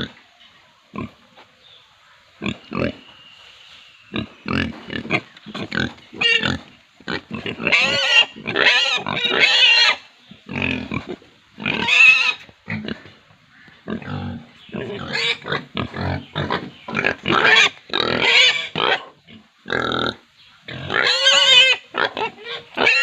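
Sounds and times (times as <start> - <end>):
pigs grunting: 4.1 - 13.2, 13.8 - 23.0
pigs squealing: 4.2 - 13.0, 13.9 - 19.1, 19.7 - 23.0.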